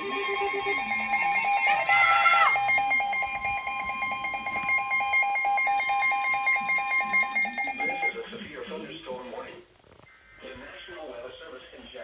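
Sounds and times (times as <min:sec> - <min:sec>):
rapid alarm beeping: 0:00.0 - 0:08.8.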